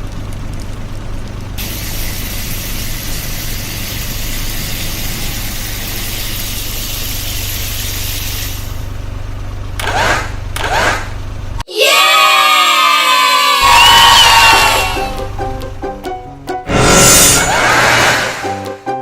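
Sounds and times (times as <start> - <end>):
engine running: 0.0 - 11.6, 13.6 - 19.0
high hiss: 1.6 - 8.8
rising whooshes: 16.7 - 18.9.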